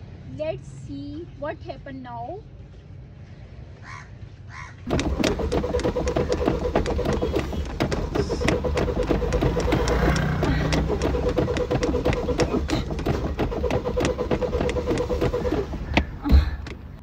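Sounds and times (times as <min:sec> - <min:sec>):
starter motor cranking engine: 0:04.9 - 0:17.0.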